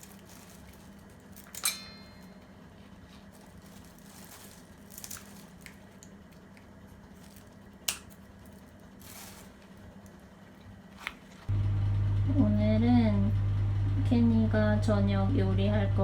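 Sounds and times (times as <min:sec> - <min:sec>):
low steady hum: 0:00.0 - 0:16.0
soft rustle: 0:03.0 - 0:05.7, 0:09.0 - 0:09.8.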